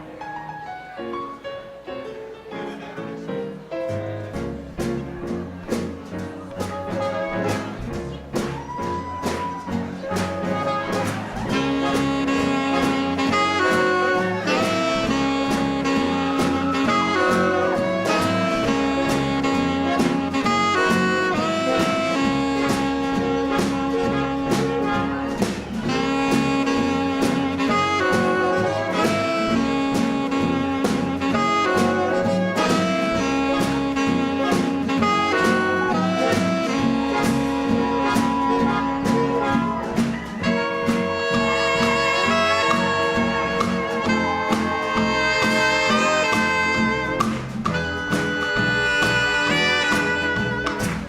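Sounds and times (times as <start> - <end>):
swing jazz band playing: 0.0 - 51.0.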